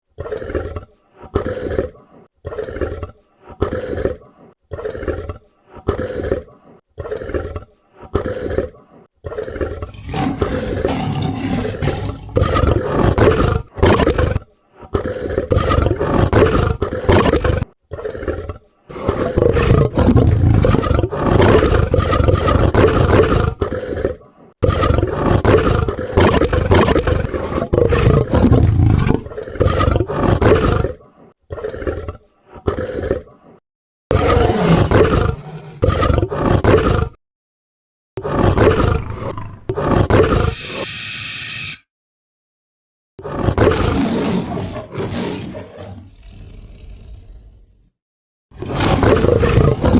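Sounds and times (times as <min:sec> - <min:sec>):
dragon roars: 0:09.4 - 0:14.4, 0:15.0 - 0:30.8, 0:34.1 - 0:37.2, 0:38.2 - 0:41.9, 0:43.2 - 0:47.8, 0:48.6 - 0:49.9.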